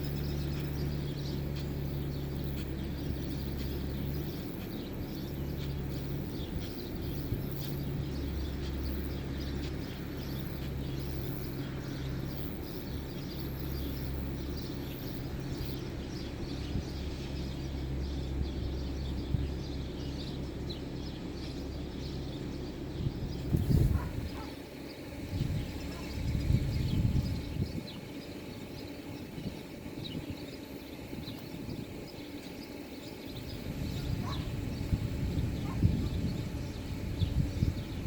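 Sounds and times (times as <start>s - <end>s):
faint chirps: 0.0s - 38.0s
low engine hum: 0.0s - 38.0s
outdoor noise: 0.0s - 38.0s.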